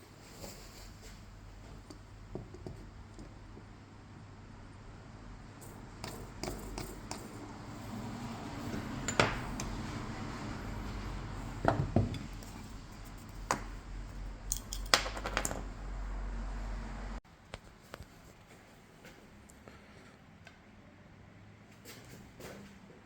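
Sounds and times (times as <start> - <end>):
metal tools clinking: 14.5 - 15.6.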